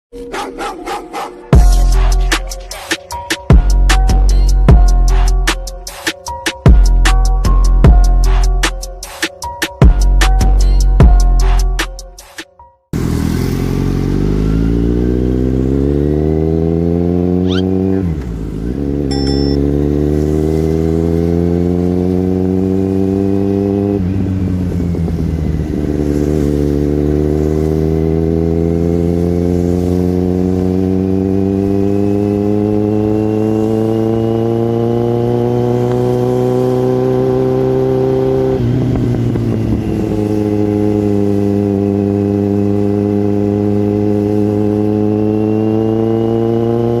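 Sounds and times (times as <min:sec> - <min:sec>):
motorcycle engine revving: 0:13.0 - 0:47.0.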